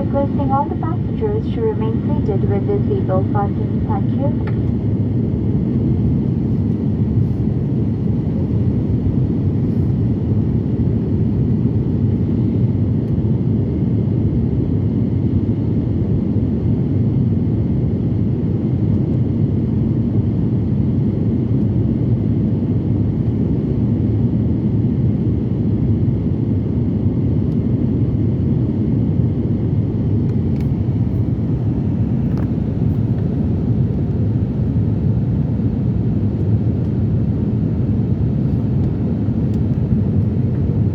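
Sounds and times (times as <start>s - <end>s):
airliner engines rumbling in cabin: 0.0s - 40.9s.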